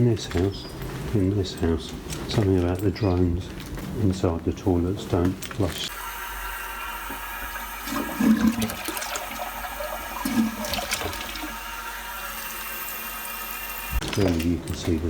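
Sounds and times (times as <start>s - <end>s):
toilet flushing: 5.9s - 15.0s.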